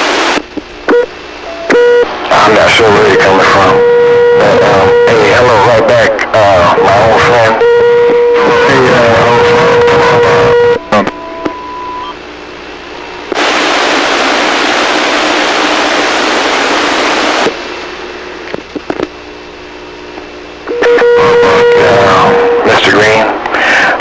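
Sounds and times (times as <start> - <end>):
radio hiss with whistling tones: 0.0 - 17.6, 20.6 - 24.0
loud rushing static: 0.0 - 24.0
radio key-up clicks: 18.5 - 19.1.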